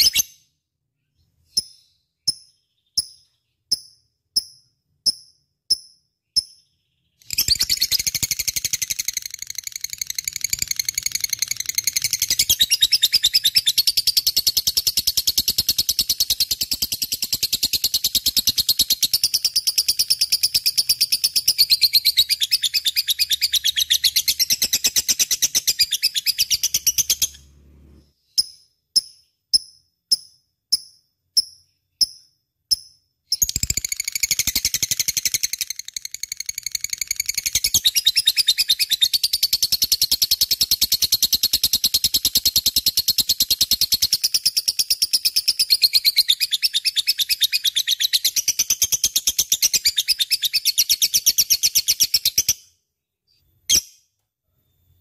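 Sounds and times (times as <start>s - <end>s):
bird high chirps: 0.0s - 54.1s
bird fast chattering: 30.1s - 44.3s.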